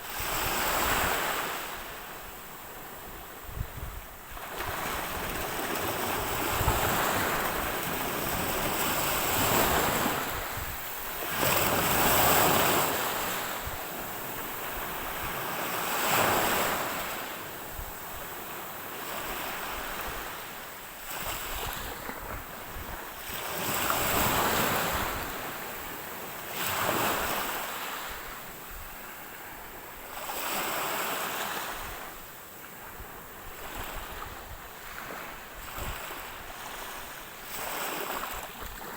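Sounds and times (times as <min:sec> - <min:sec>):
ocean waves breaking: 0:04.3 - 0:28.4, 0:33.0 - 0:38.9.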